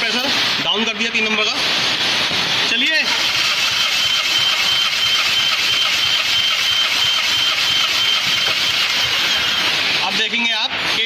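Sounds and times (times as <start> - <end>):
engine cranking without firing: 3.1 - 9.6.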